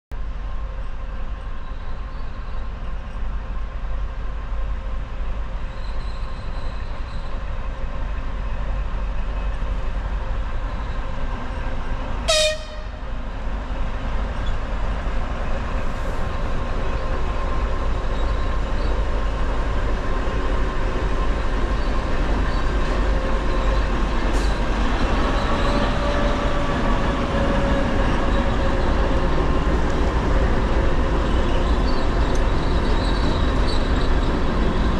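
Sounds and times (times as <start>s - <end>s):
diesel locomotive running: 0.2s - 34.9s
train horn toot: 12.3s - 13.1s.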